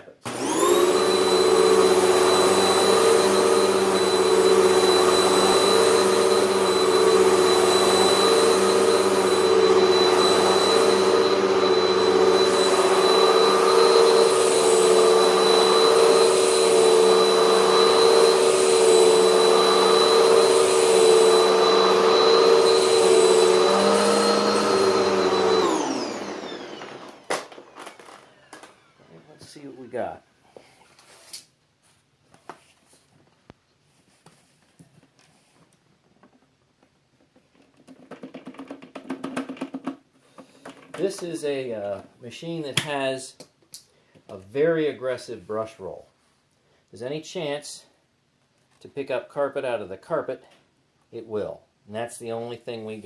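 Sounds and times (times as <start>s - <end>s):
vacuum cleaner motor whining: 0.2s - 30.8s.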